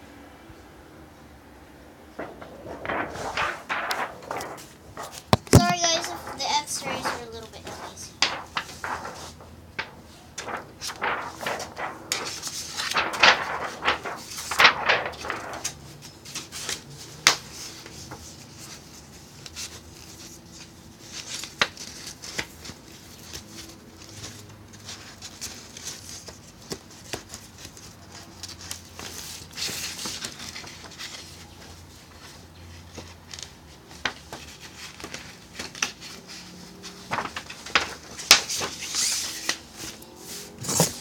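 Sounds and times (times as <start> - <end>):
x-ray film rustling: 2.2 - 16.4, 32.8 - 41.0.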